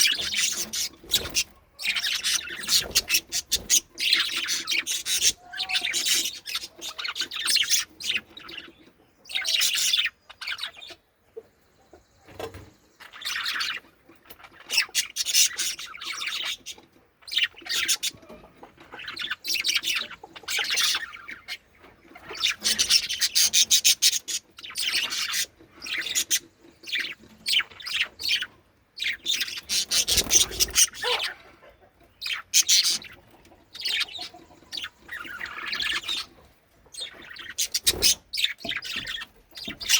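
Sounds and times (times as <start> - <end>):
budgerigars chattering and chirping: 0.0 - 39.9.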